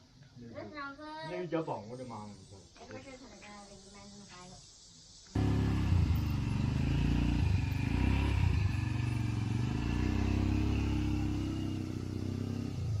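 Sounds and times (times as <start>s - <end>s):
vehicle engine revving: 5.4s - 13.0s.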